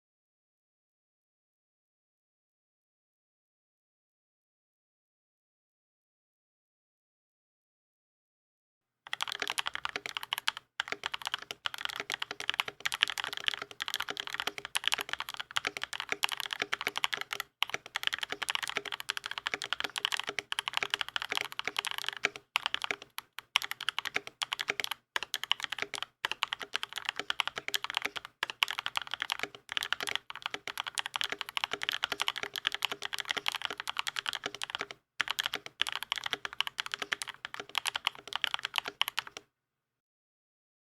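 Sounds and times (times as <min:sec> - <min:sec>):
fast typing on mechanical keyboard: 0:09.1 - 0:39.4.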